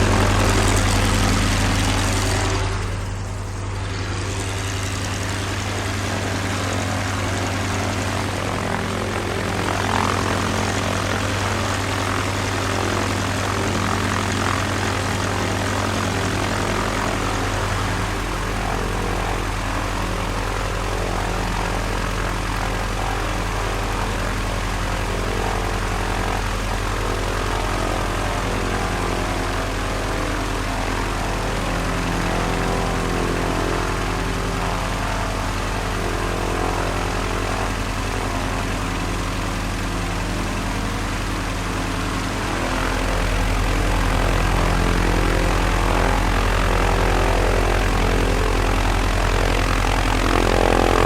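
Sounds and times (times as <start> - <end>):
propeller airplane engine idling: 0.0 - 51.0.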